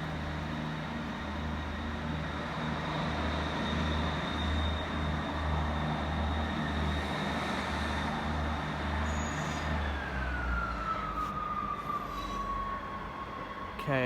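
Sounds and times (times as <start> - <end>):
diesel train engines throbbing: 0.0 - 13.8.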